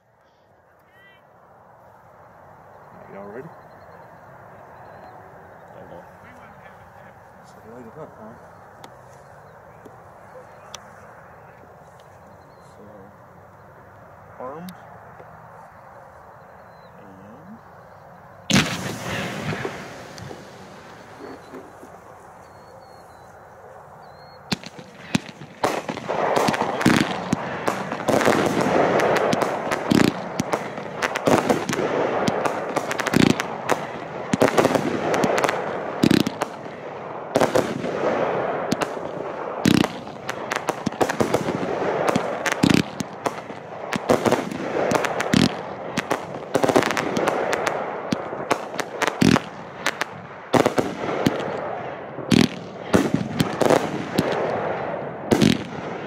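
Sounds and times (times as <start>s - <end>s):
fireworks bangs: 4.7s - 13.1s, 18.4s - 56.0s
fireworks crackling hiss: 5.2s - 13.9s, 18.4s - 51.7s, 52.3s - 54.7s.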